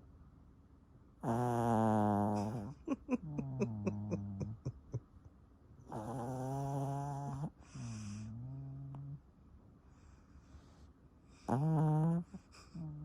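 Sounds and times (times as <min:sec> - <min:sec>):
dog snoring: 0:01.2 - 0:04.6, 0:05.9 - 0:09.2, 0:11.4 - 0:13.0.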